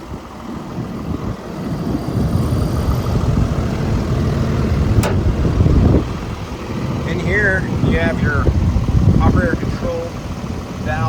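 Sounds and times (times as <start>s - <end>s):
excavator diesel engine running: 0.0s - 11.0s
sharp click: 5.0s - 5.3s.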